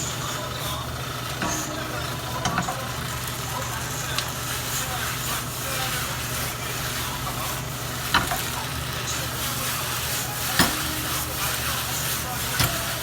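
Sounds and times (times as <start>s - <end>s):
onions sizzling in a frying pan: 0.0s - 13.0s
utensil knocking against pan: 10.4s - 13.0s.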